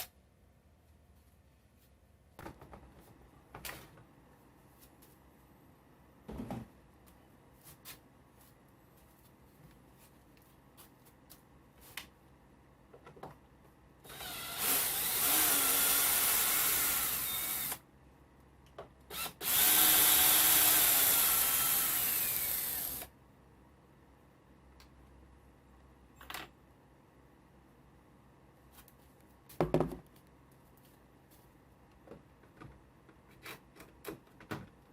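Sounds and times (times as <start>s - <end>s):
power drill whining: 14.0s - 17.8s, 19.1s - 23.1s.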